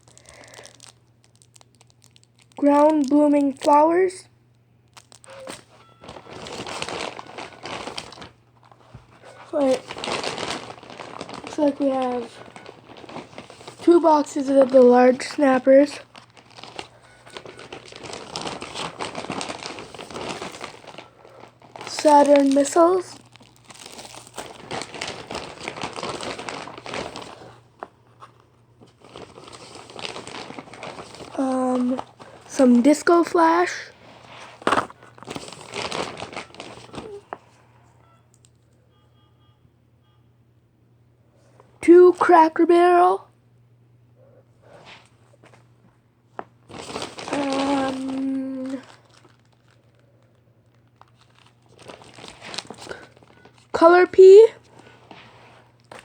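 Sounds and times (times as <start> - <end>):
packaging crinkling: 0.0 - 38.7, 46.3 - 56.0.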